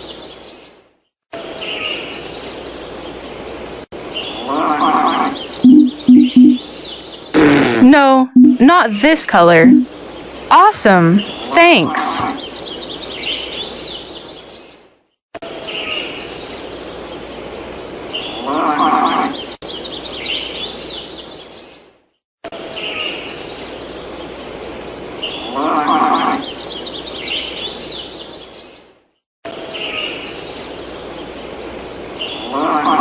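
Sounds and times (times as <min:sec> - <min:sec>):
birds chirping: 0:01.4 - 0:14.8, 0:29.6 - 0:33.0.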